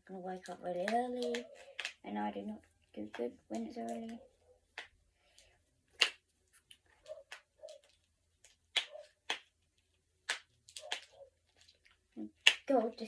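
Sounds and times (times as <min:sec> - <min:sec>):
child talking: 0:00.0 - 0:04.2, 0:12.2 - 0:13.0.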